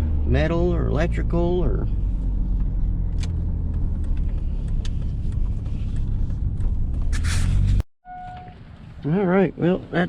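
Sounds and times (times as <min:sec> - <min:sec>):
truck engine drone: 0:00.0 - 0:07.8
road rumble: 0:00.0 - 0:10.0.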